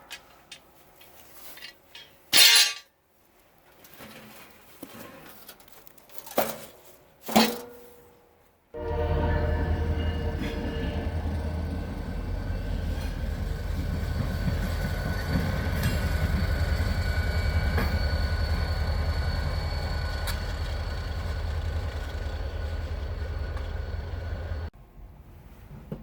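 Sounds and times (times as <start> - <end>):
high wheel squeal: 8.8 - 24.7
train rumbling on rails: 8.8 - 24.8
train wheel clicks: 10.4 - 24.7.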